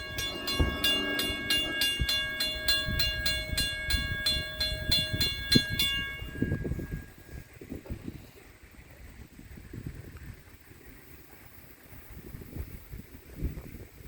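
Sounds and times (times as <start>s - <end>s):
low rumbling and knocks: 0.0s - 7.1s
railroad crossing bell ringing: 0.0s - 7.6s.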